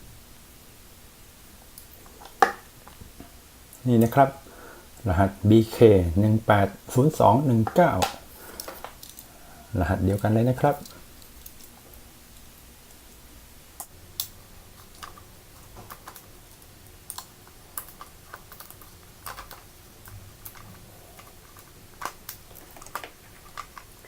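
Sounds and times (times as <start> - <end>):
hard plastic packaging clicking: 7.6 - 9.3, 13.8 - 24.0.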